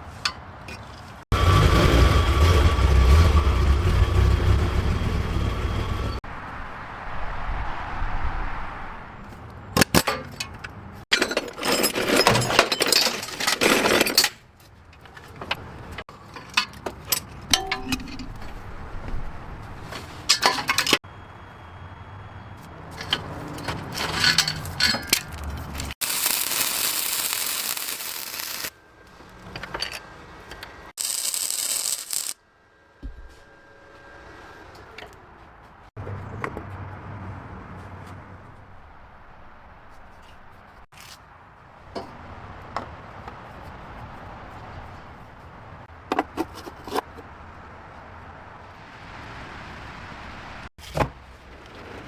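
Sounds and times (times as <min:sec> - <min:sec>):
steady rushing noise: 0:06.2 - 0:09.3
metal clinks and rattles: 0:23.0 - 0:25.9.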